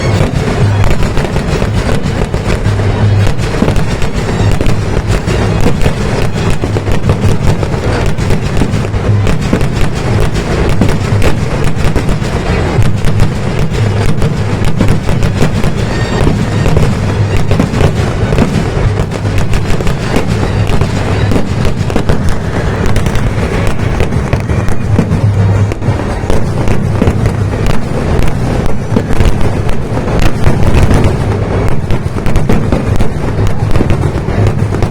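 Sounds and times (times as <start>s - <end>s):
firecracker bangs and crackles: 0.0s - 34.9s.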